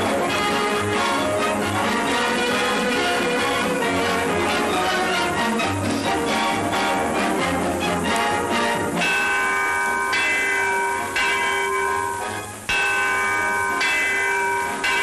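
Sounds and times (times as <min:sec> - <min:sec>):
bell ringing: 0:08.8 - 0:15.0.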